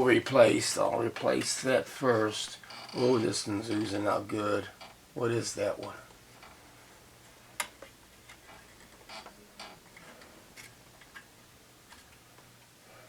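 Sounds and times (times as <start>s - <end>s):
light clicks and taps of handling: 7.6s - 9.0s.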